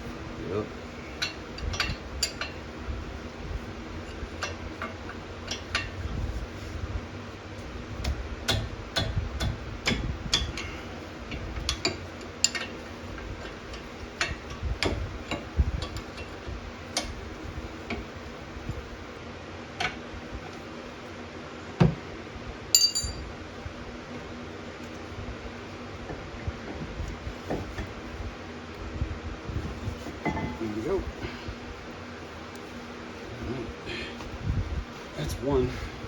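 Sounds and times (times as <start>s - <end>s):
ringing clink: 22.7s - 23.3s
metallic clinks of hand tools: 22.8s - 23.2s.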